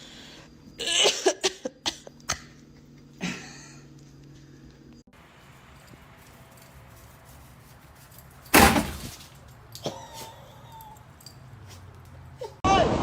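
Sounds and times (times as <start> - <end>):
loud bang: 8.6 - 9.1.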